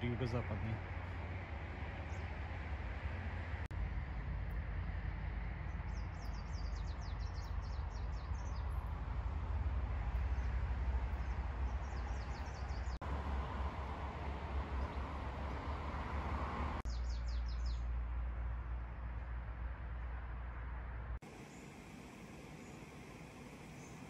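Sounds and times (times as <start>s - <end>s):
songbird chirping trills: 5.7s - 9.0s, 10.0s - 13.0s, 16.8s - 18.0s.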